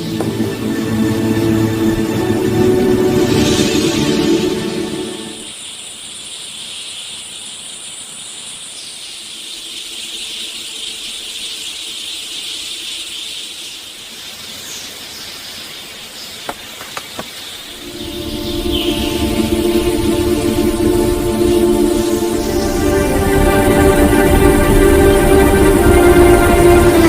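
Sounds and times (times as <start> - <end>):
high-pitched hiss: 17.4 - 27.0.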